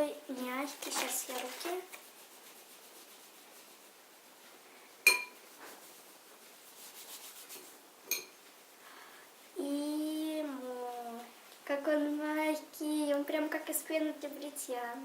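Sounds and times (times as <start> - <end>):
faint rubbing and handling: 0.0 - 9.6
kitchenware clinking: 5.0 - 5.4, 8.1 - 8.4.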